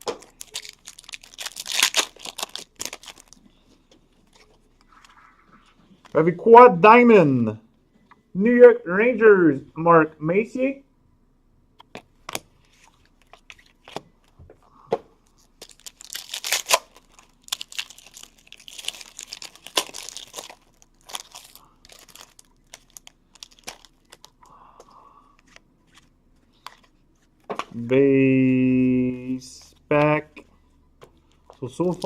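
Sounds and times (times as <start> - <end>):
wrapper tearing and crinkling: 0.0 - 3.4, 15.4 - 24.4, 31.8 - 32.0.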